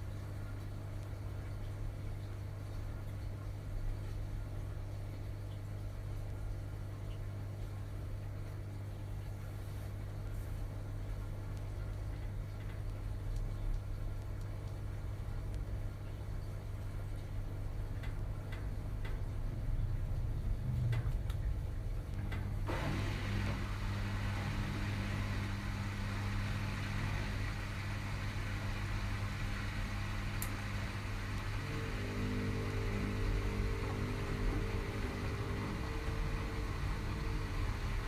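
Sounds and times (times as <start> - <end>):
washing machine spinning: 0.0 - 38.0
faint clicks: 11.5 - 17.3.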